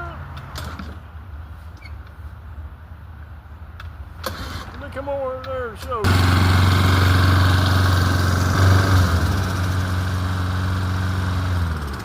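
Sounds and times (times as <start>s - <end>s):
lawn mower engine running: 4.2s - 4.8s, 6.0s - 12.0s.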